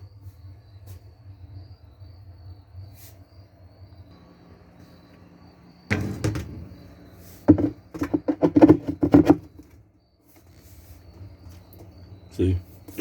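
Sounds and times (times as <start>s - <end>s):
sudden thump: 5.9s - 6.8s
washer parts knocking and rattling: 5.9s - 6.8s, 7.4s - 9.8s
clattering knocks: 5.9s - 9.7s.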